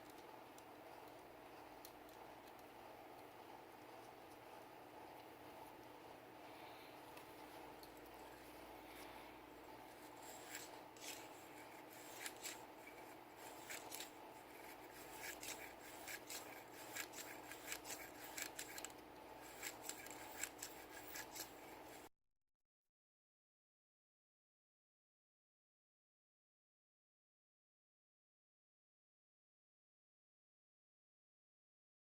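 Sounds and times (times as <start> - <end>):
steady hum: 0.0 - 22.1
scratchy brushing and rubbing: 9.8 - 22.1.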